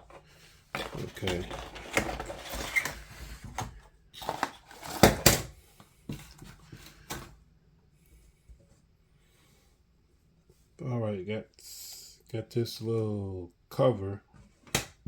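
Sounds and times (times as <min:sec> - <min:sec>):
packaging rustling and knocking: 0:00.8 - 0:05.5.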